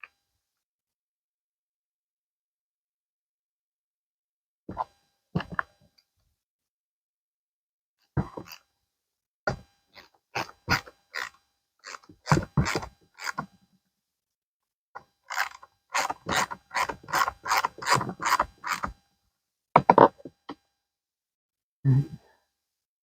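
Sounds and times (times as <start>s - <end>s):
ratchet clicking: 10.4s - 13.5s, 15.3s - 19.0s.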